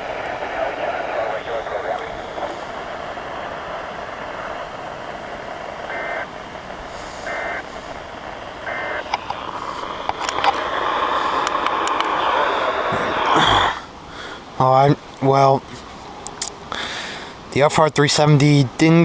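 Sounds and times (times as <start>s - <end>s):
warbling data bursts: 0.0s - 13.3s
radio static: 0.0s - 13.9s
clicks: 8.7s - 9.4s, 10.0s - 10.7s, 11.3s - 12.2s.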